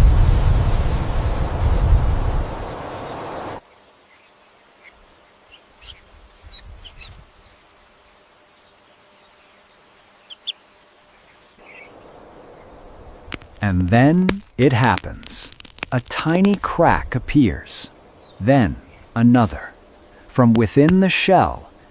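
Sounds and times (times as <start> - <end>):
rushing wind-like noise: 0.0 - 3.6
faint bird chirps: 3.1 - 12.8.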